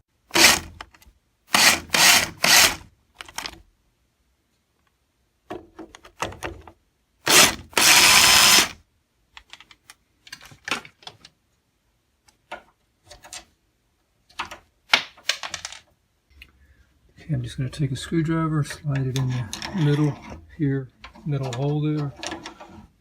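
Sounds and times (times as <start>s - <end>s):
power tool bursts: 0.3s - 0.7s, 1.5s - 2.9s, 7.3s - 8.8s.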